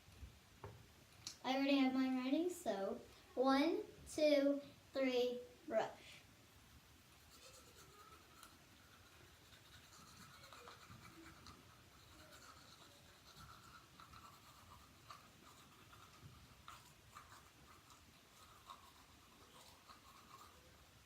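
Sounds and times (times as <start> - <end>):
toothbrush scrubbing teeth: 7.1 - 21.0.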